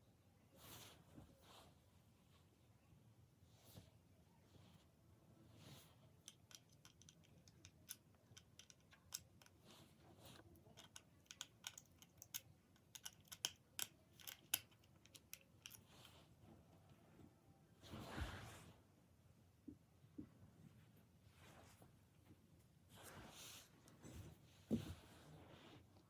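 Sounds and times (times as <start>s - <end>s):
plastic toy parts clicking: 6.2s - 9.6s, 10.6s - 15.8s.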